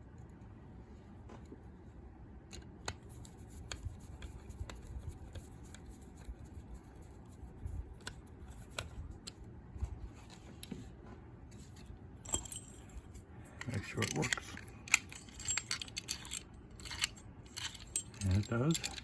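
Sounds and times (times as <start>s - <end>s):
small metal clicks: 13.6s - 19.0s.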